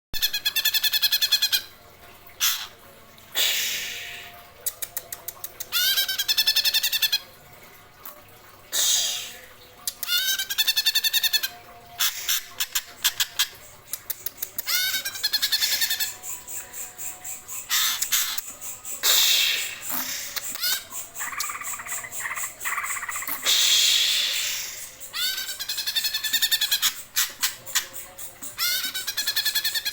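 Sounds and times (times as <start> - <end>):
bird harsh rasping calls: 17.6 - 18.4, 19.0 - 27.6, 28.4 - 29.9.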